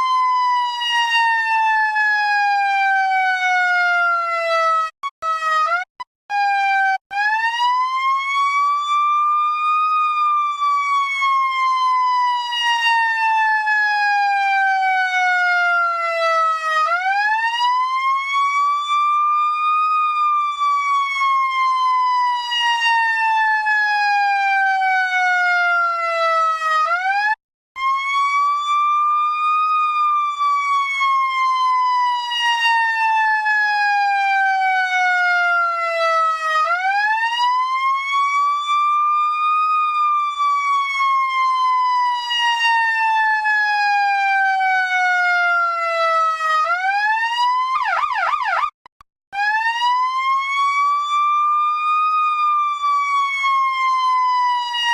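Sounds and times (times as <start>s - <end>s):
siren wailing: 0.0s - 48.8s, 49.4s - 54.9s.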